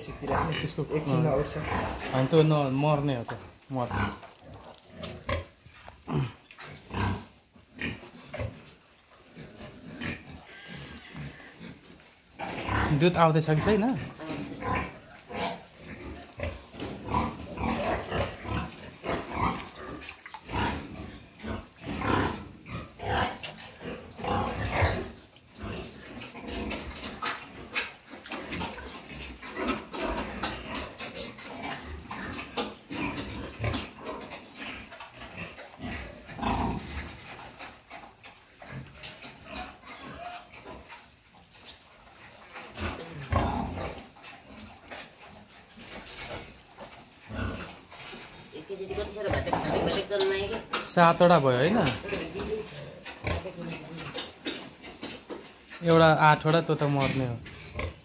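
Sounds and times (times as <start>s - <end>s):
pigs grunting and squealing: 0.0s - 58.0s.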